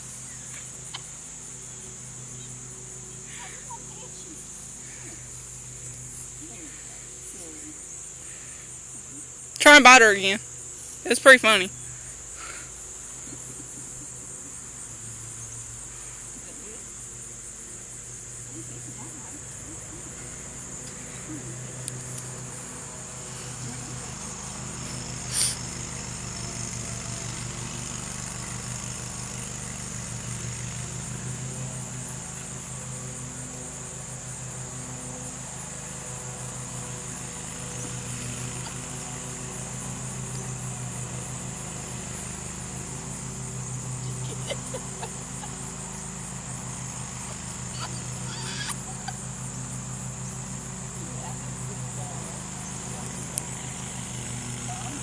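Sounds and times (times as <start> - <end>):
high-pitched insect chorus: 0.0 - 55.0.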